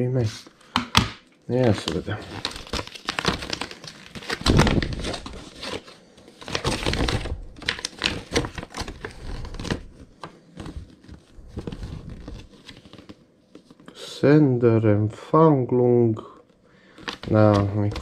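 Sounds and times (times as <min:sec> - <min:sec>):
rustling: 0:01.5 - 0:13.9.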